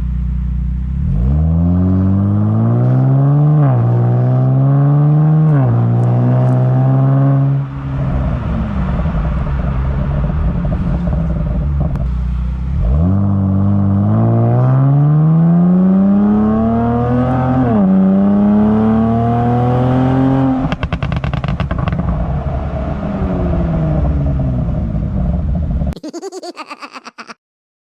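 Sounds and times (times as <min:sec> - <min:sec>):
car exhaust accelerating: 0:00.0 - 0:25.9
exhaust crackling pops: 0:20.7 - 0:22.2.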